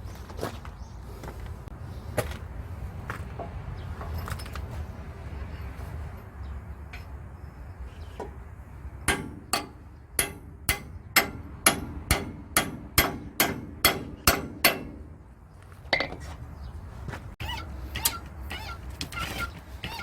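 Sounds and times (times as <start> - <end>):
hammer striking metal: 9.1 - 15.1.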